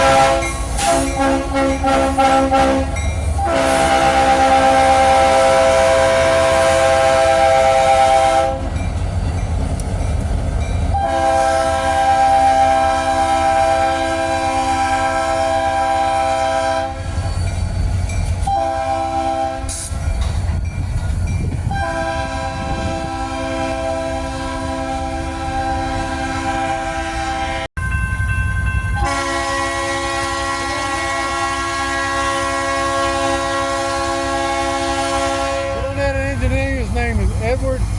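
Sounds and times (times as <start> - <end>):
locomotive air horn blasts: 0.0 - 8.7, 10.9 - 17.0, 18.4 - 19.7, 21.7 - 27.7, 29.0 - 36.3
rumble of moving train: 0.0 - 37.9.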